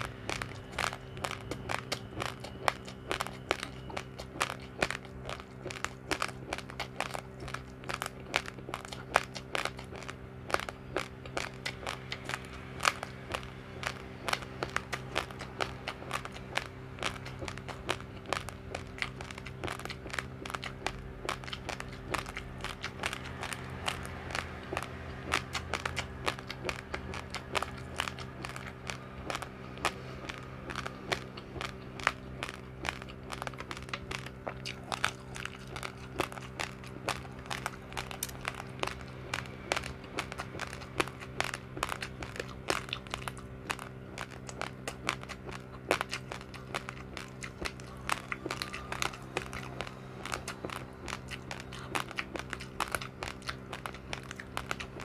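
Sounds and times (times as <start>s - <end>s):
rice grains crunched between teeth: 0.0s - 55.0s
steady low hum: 0.0s - 55.0s.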